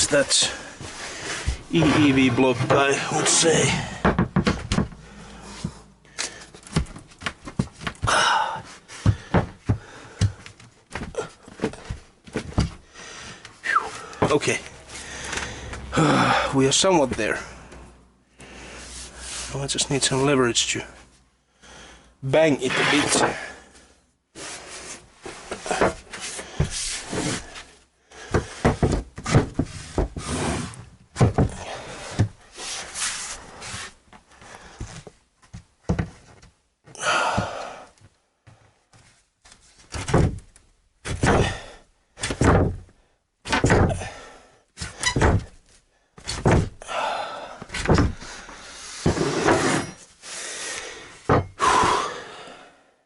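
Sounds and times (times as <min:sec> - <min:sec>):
wooden thuds and knocks: 0:00.8 - 0:05.8, 0:06.6 - 0:08.2, 0:09.0 - 0:12.9, 0:25.5 - 0:27.4, 0:28.2 - 0:30.3, 0:31.1 - 0:32.4, 0:34.8 - 0:36.6, 0:39.9 - 0:44.2, 0:44.8 - 0:46.8, 0:47.6 - 0:48.3, 0:51.2 - 0:52.0.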